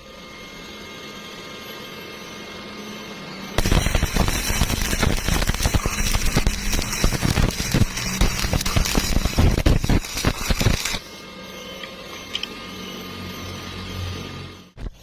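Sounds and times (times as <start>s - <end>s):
arc welder humming: 0.0s - 15.0s
welding arc crackling: 3.6s - 11.1s.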